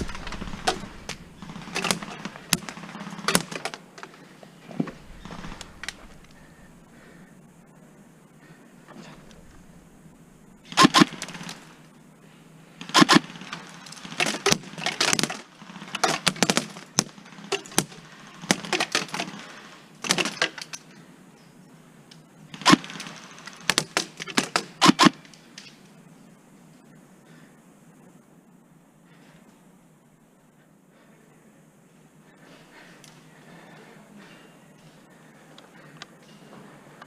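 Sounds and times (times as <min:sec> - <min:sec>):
airsoft gun firing: 0:00.0 - 0:03.7, 0:05.0 - 0:06.8, 0:10.6 - 0:11.8, 0:12.8 - 0:19.5, 0:22.5 - 0:25.3.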